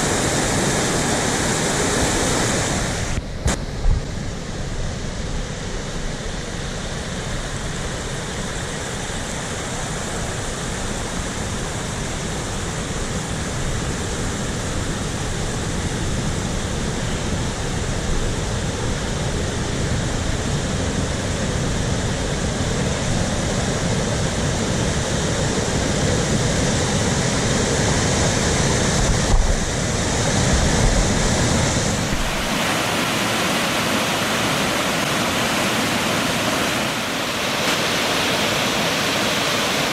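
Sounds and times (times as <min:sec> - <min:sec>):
wind buffeting microphone: 0:12.5 - 0:37.4
waterfall pouring over rock: 0:31.9 - 0:39.9.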